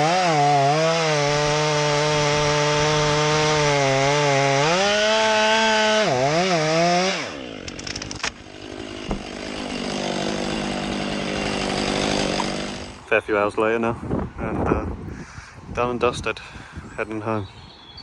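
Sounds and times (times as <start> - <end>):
chainsaw running: 0.0 - 13.1
single knock: 9.1 - 9.3.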